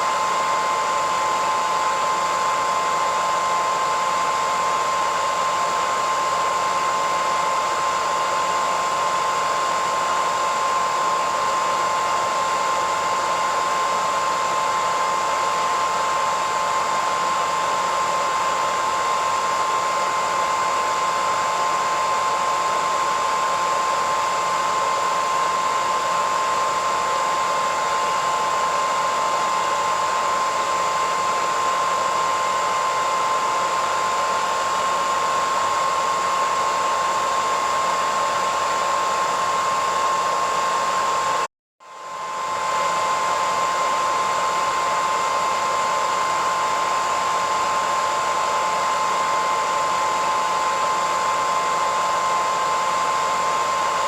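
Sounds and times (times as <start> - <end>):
hairdryer running: 0.0 - 54.0.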